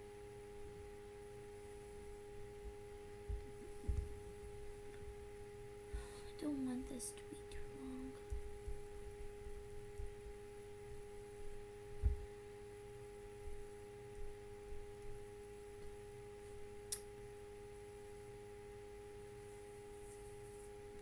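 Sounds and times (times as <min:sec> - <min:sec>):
faint hum with constant tones: 0:00.0 - 0:21.0
sharp click: 0:16.9 - 0:17.1.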